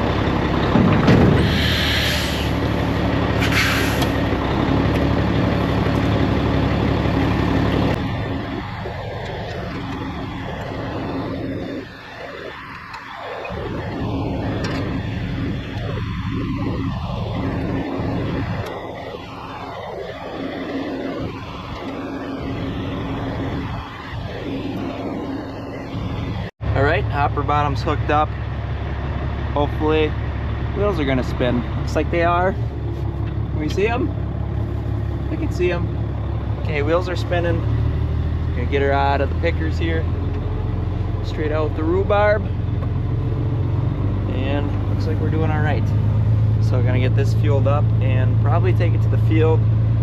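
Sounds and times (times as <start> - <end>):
truck diesel engine running: 0.0 - 50.0
air hiss: 1.4 - 2.8, 3.4 - 4.2.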